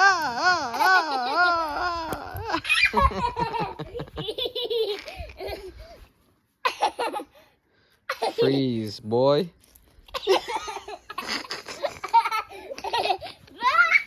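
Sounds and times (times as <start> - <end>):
young child laughing: 0.1 - 6.0, 6.6 - 7.3, 10.1 - 14.0.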